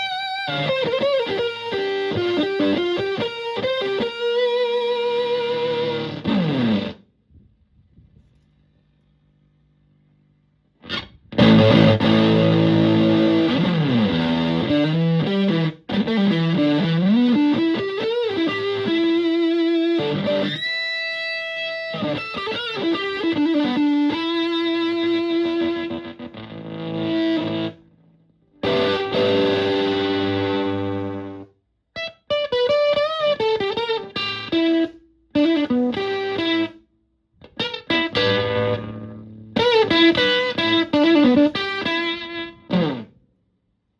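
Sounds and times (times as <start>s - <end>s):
distorted fuzzy electric guitar chords: 0.0s - 7.0s, 10.9s - 27.8s, 28.6s - 31.4s, 37.6s - 43.1s.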